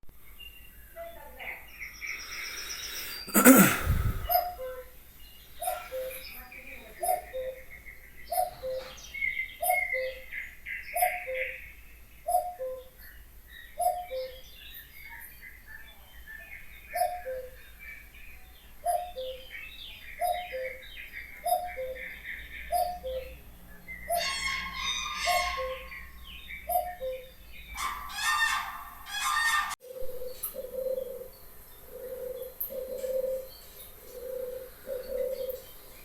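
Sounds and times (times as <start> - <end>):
high bird chirps: 1.7 - 4.8, 18.8 - 30.7.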